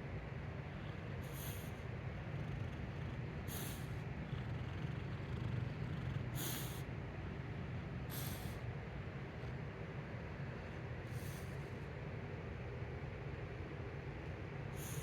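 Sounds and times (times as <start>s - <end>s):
dog snoring: 0.4s - 11.9s, 14.7s - 15.0s.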